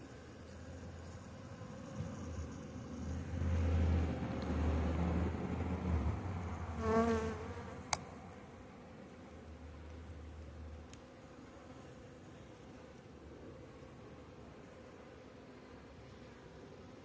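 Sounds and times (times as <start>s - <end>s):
bee flying past: 6.2s - 8.0s.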